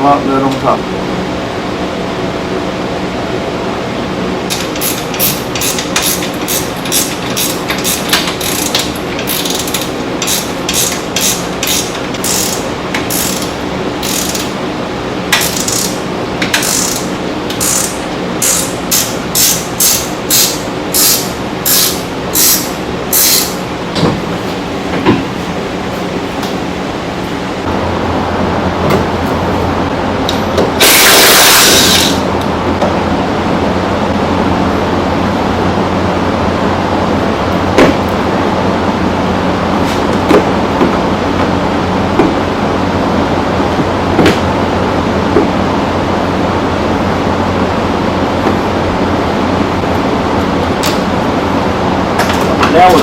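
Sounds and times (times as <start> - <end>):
ratchet wrench clicking: 4.5 - 14.5, 15.4 - 23.6.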